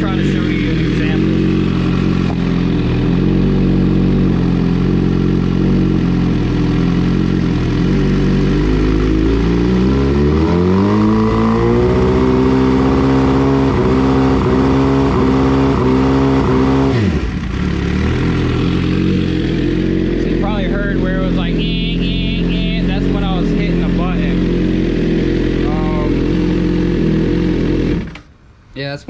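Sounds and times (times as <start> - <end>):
motorcycle engine revving: 0.0 - 28.3.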